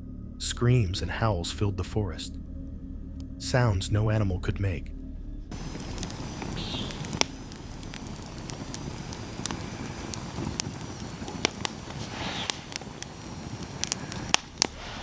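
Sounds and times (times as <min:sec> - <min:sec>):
low background rumble: 0:00.0 - 0:15.0
sharp snaps and pops: 0:05.5 - 0:15.0.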